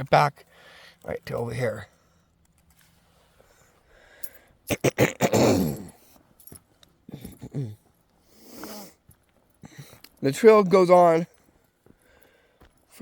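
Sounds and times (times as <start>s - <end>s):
soft breath: 0.5s - 1.0s, 1.9s - 4.6s, 11.8s - 12.9s.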